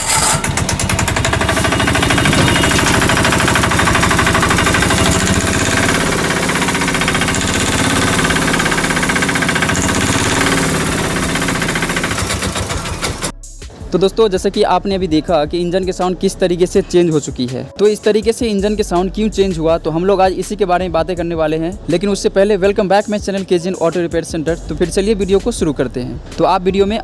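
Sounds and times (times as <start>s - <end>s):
diesel engine clattering: 0.0s - 13.4s.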